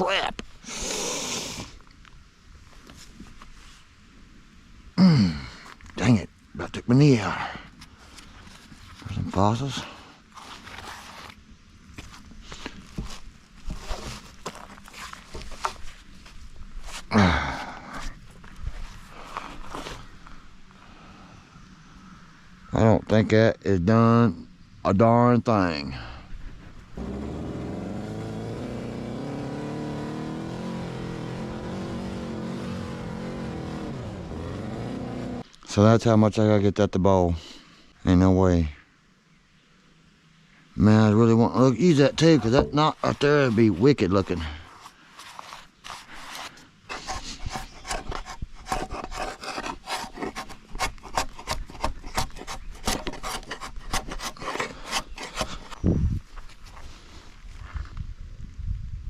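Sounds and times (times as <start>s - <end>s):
engine running steadily: 27.0s - 35.4s
rasping scraping strokes on wood: 27.0s - 35.4s, 42.2s - 55.8s.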